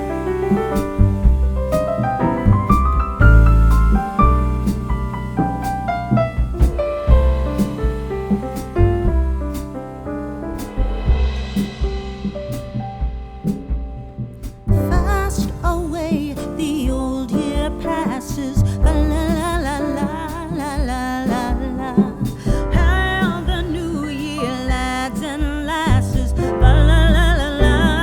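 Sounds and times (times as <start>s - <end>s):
song with singer over beat: 14.8s - 28.0s.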